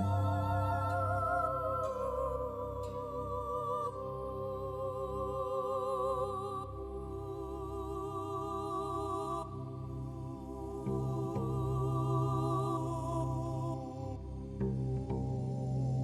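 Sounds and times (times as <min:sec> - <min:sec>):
slow melody with vibrato: 0:00.0 - 0:04.3
low sustained bass: 0:00.0 - 0:16.0.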